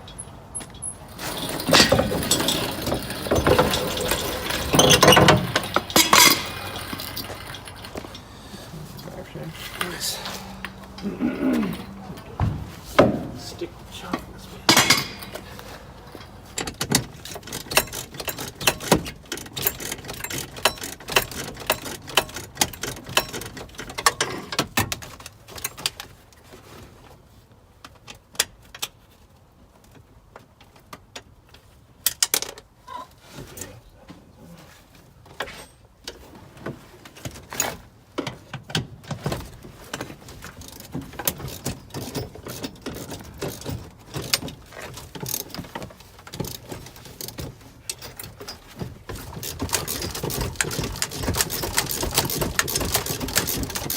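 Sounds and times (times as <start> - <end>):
metal parts clinking and rattling: 0.0 - 26.0, 39.1 - 53.9.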